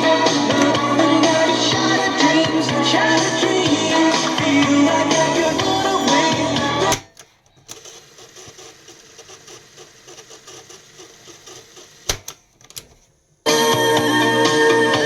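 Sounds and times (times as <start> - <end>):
music: 0.0 - 7.1, 13.5 - 15.0.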